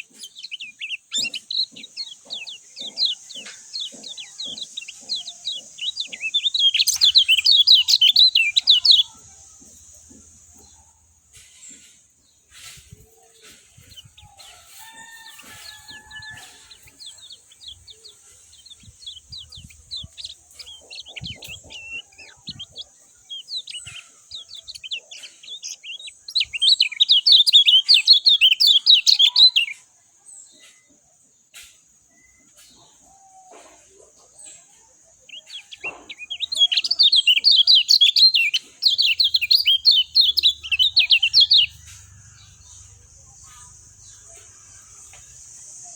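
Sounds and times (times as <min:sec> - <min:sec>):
bird chattering twitter: 0:00.0 - 0:09.2, 0:15.6 - 0:29.8, 0:35.2 - 0:45.2.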